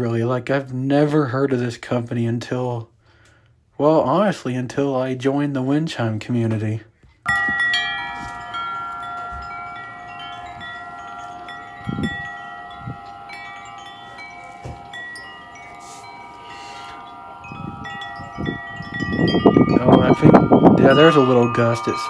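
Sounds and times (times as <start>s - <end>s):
wind chimes ringing: 7.3s - 22.0s.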